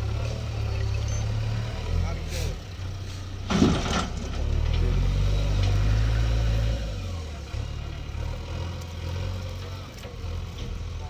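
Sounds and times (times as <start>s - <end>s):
heavy diesel engine running: 0.0s - 11.0s.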